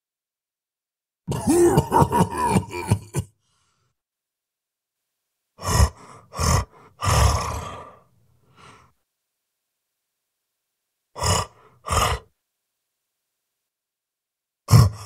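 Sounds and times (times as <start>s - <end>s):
monster grunts and groan: 1.3s - 3.3s, 5.6s - 8.0s, 11.2s - 12.3s, 14.7s - 15.0s.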